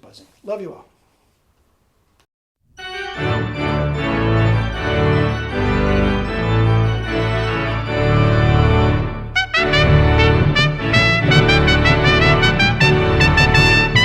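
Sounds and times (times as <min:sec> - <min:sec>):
organ-like keyboard chords: 0:02.8 - 0:14.0
low bass line: 0:04.0 - 0:14.0.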